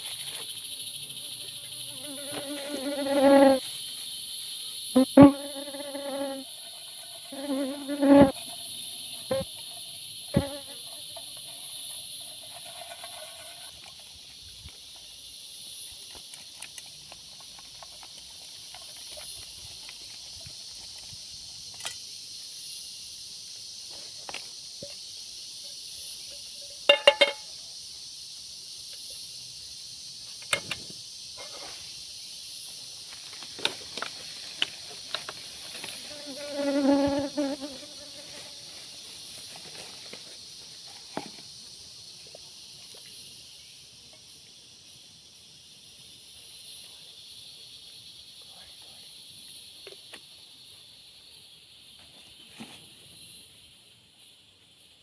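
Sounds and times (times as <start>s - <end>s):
insect chorus: 0.0s - 55.0s.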